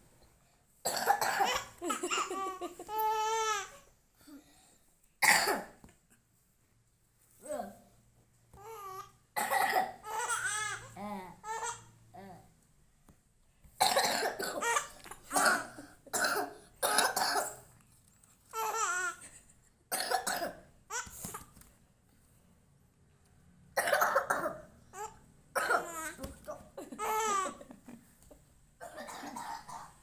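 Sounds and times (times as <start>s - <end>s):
person coughing: 5.2s - 5.8s, 13.8s - 17.6s, 28.8s - 30.0s
person laughing: 26.2s - 28.4s.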